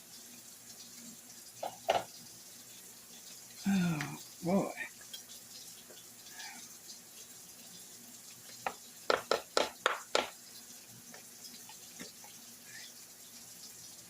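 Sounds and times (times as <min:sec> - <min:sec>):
faint steady hiss: 0:00.0 - 0:14.0
sharp kitchen knocks and clinks: 0:01.6 - 0:02.1.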